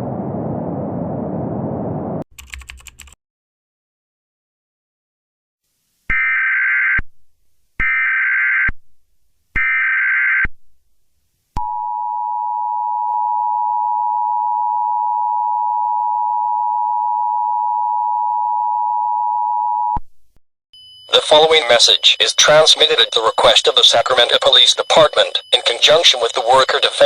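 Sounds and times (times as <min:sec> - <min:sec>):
data bursts: 0:20.8 - 0:27.0
two-tone attention signal: 0:20.8 - 0:27.0.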